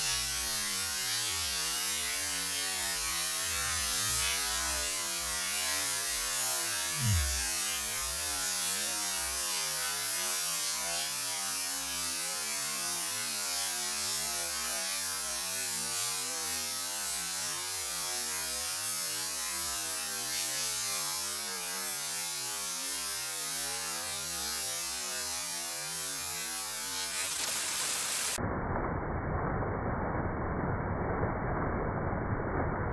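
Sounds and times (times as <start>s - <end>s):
waterfall rushing: 27.1s - 28.4s.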